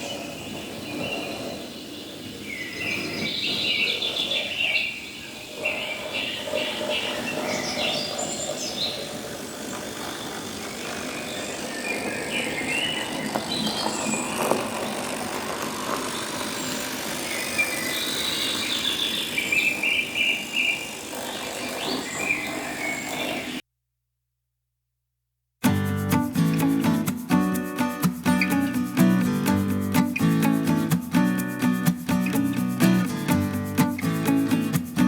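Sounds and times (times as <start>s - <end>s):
model train running: 5.7s - 23.6s.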